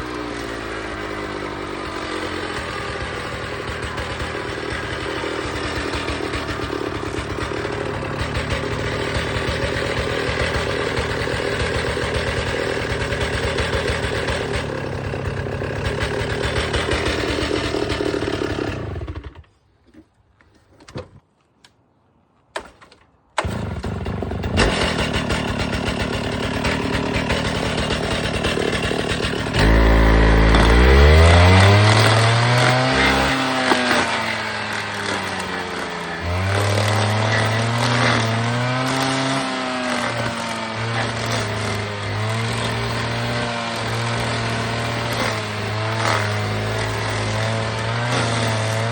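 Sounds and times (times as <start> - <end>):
stump grinder engine grinding: 0.0 - 20.1, 23.4 - 48.9.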